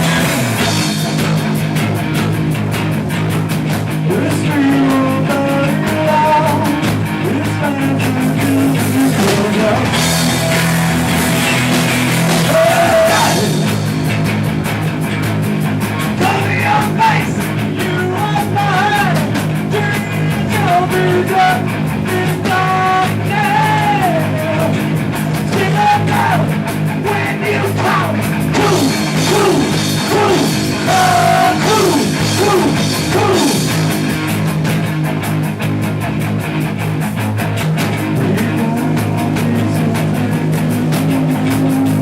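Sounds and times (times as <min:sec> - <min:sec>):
punk rock band playing: 0:00.0 - 0:42.0
person singing: 0:04.1 - 0:10.0, 0:12.4 - 0:13.7, 0:16.2 - 0:24.8, 0:25.5 - 0:33.7, 0:38.2 - 0:42.0.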